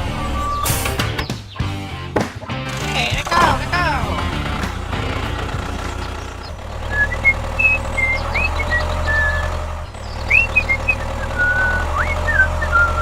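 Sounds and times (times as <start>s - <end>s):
motor drone with whine: 3.8s - 13.0s.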